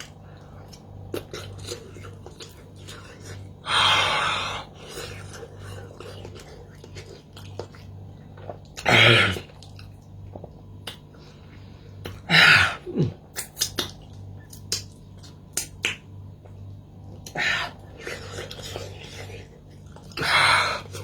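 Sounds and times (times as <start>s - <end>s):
lip smacks and tongue clicks: 9.6s - 11.2s, 13.3s - 17.4s.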